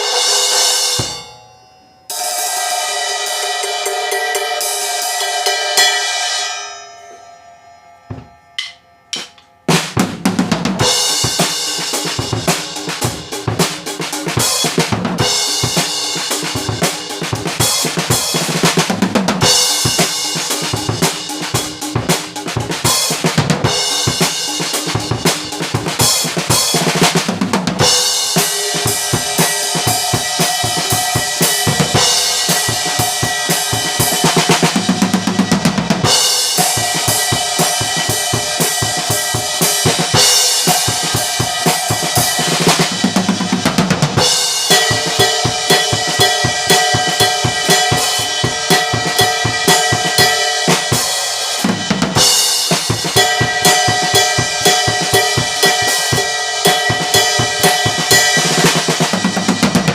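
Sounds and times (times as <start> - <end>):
drum kit groove: 0.0 - 1.4, 2.1 - 7.3, 8.1 - 59.9
cymbals ringing: 0.0 - 13.4, 27.8 - 59.9.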